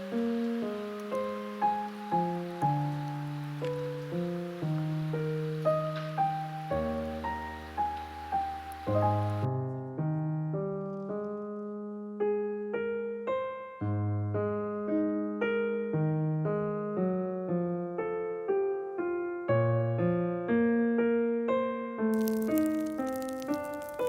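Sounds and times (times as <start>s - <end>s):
solo piano melody: 0.0s - 24.0s.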